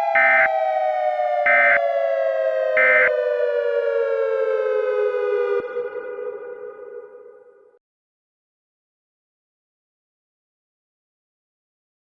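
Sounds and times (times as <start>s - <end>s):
siren winding down: 0.0s - 7.8s.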